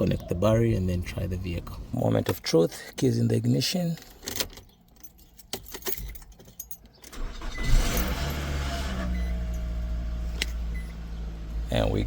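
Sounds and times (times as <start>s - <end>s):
keys clicking in ignition: 3.8s - 9.8s
car engine revving and idling: 7.2s - 12.0s.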